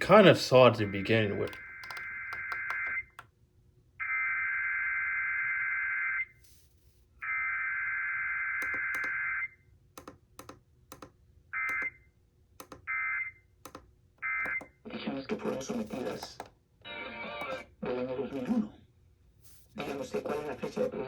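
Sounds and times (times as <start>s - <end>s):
sharp clicks: 1.3s - 3.3s, 8.6s - 9.2s, 10.0s - 11.9s, 12.6s - 12.9s, 13.6s - 14.7s, 15.9s - 16.5s, 17.4s - 17.6s.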